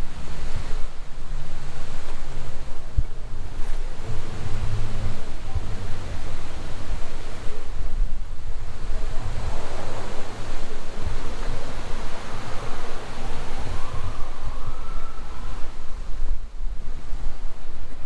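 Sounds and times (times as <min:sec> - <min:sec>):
engine and tyres rumbling: 0:00.0 - 0:14.5
wind noise on microphone: 0:00.0 - 0:18.0
faint whine: 0:00.8 - 0:16.8.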